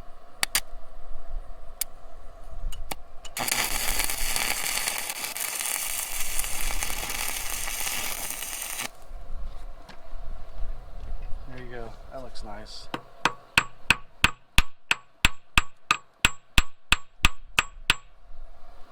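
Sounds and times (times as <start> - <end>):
arc welder crackling: 2.9 - 9.1.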